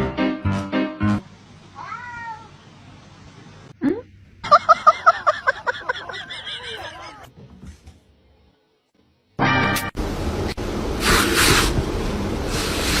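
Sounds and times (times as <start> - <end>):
cat meowing: 1.8 - 2.6.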